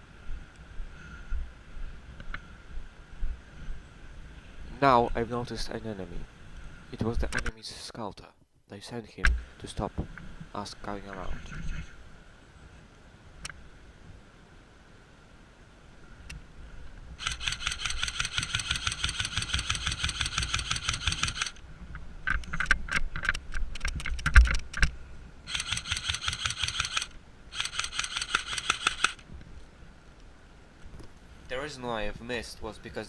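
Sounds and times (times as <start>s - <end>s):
airsoft rifle firing: 25.5s - 29.2s.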